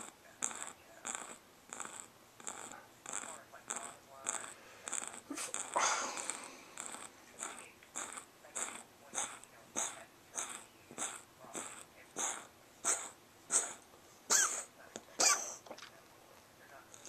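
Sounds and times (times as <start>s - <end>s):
cat coughing: 5.4s - 6.6s, 8.6s - 15.6s.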